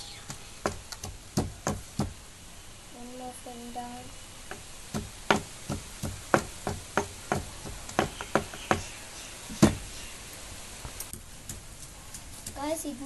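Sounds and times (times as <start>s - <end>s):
pestle pounding in a mortar: 0.6s - 2.2s, 4.5s - 8.9s.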